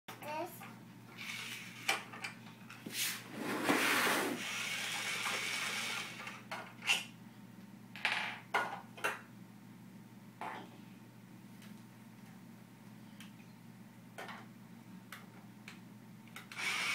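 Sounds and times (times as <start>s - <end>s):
cordless drill running: 4.4s - 6.3s, 16.4s - 16.9s.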